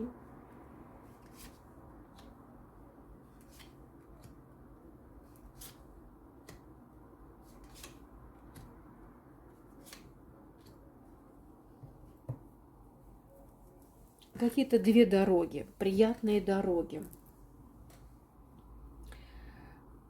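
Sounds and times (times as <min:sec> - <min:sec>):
cards snapping and flicking: 0:09.8 - 0:10.1.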